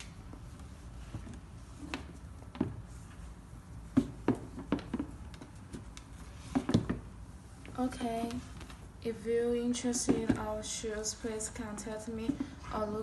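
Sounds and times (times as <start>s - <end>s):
sneakers knocking and tapping: 3.9s - 7.1s, 10.0s - 10.6s.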